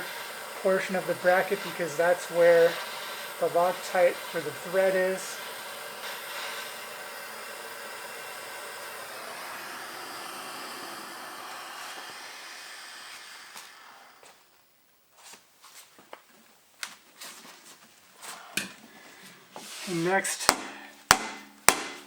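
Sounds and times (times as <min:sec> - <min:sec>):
gas torch flame hissing: 0:00.0 - 0:14.6.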